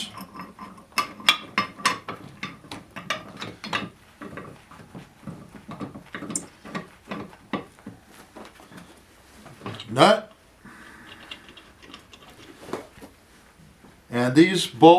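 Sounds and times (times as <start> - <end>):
metal parts knocking and clinking: 0.0 - 7.7, 9.6 - 10.2, 11.0 - 12.5.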